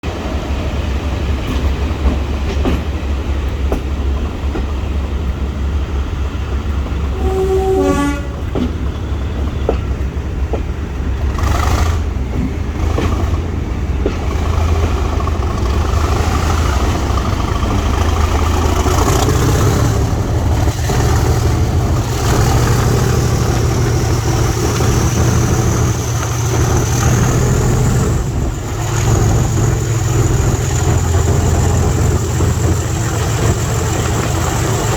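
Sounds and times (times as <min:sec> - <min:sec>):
locomotive diesel engine running: 0:00.0 - 0:34.9
locomotive horn blast: 0:07.1 - 0:09.5.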